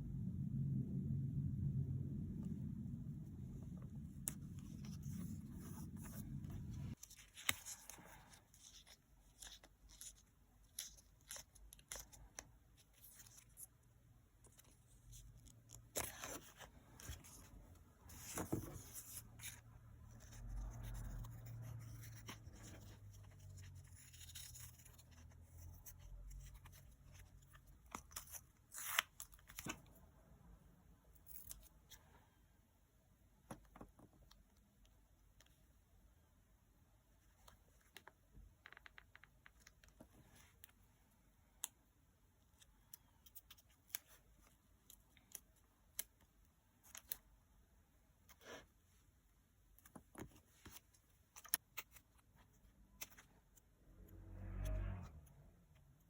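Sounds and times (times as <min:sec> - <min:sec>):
low hum: 0:00.0 - 0:07.0, 0:53.6 - 0:56.0.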